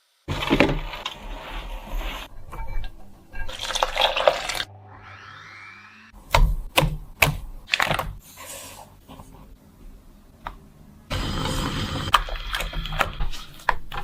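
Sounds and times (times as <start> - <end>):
watery food preparation noise: 0.2 - 4.7, 11.1 - 14.0.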